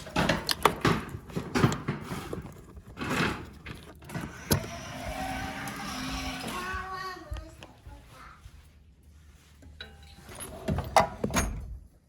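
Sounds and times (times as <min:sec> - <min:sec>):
parts clicking and knocking: 0:00.0 - 0:06.5.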